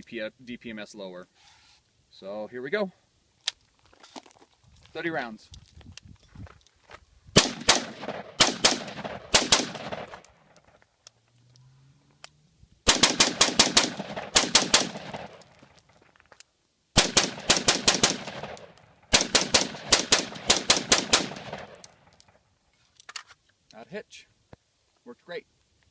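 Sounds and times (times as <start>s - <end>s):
rifle shots: 7.4s - 10.4s, 12.9s - 15.7s, 17.0s - 22.2s.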